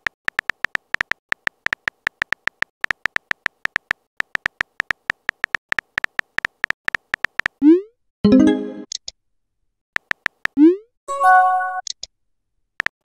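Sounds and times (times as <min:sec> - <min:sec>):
on-screen keyboard clicks: 0:00.0 - 0:07.6, 0:10.0 - 0:10.7, 0:11.7 - 0:12.1, 0:12.8 - 0:13.0.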